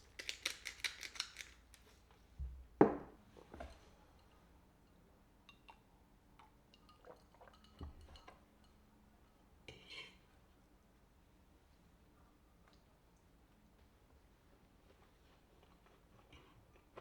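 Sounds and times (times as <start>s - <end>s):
soft knock: 2.4s - 3.2s.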